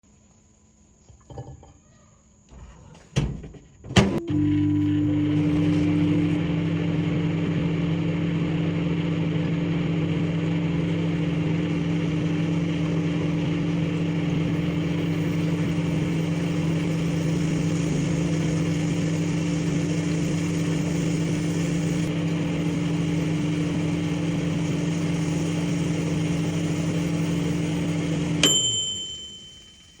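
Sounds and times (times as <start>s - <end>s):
microwave oven humming: 3.9s - 30.0s
high beep: 28.4s - 30.0s.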